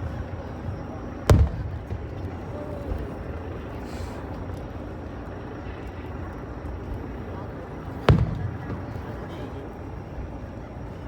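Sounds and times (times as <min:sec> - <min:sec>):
firework boom: 0:01.2 - 0:02.2, 0:08.0 - 0:09.1.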